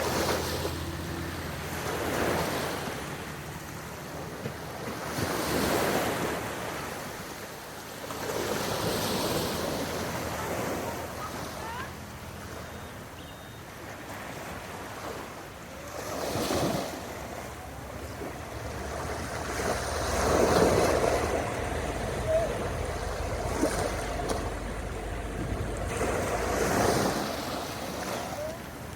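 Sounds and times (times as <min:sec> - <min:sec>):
sea water washing: 0:00.0 - 0:28.9
wind buffeting microphone: 0:17.8 - 0:28.0.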